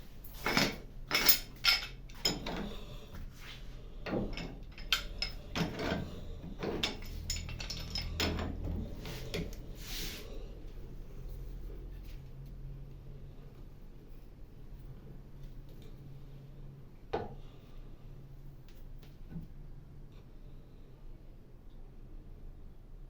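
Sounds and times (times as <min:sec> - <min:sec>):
metal tools clinking: 0:00.3 - 0:02.8, 0:04.1 - 0:08.7.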